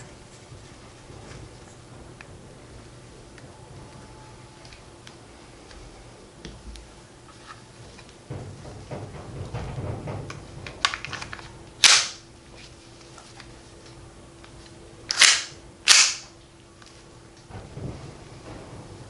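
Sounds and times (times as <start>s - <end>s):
airsoft pistol shots: 11.8s - 12.2s, 15.1s - 16.3s.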